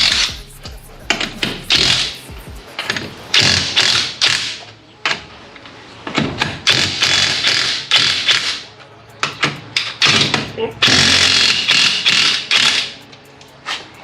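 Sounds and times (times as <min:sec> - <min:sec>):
floor jack being pumped: 0:00.0 - 0:04.6.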